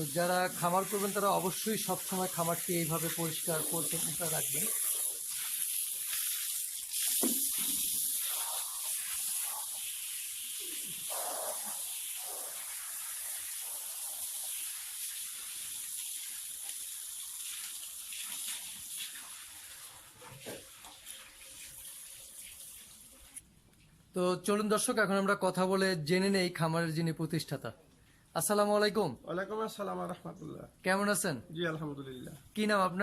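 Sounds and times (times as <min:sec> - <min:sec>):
water running and splashing: 0:00.0 - 0:23.4.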